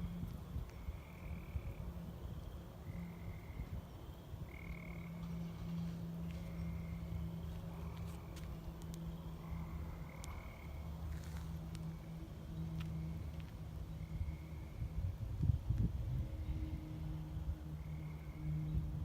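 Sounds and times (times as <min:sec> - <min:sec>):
steady low hum: 0:00.0 - 0:19.0
frogs calling: 0:00.6 - 0:02.0, 0:02.8 - 0:15.0, 0:17.7 - 0:18.8.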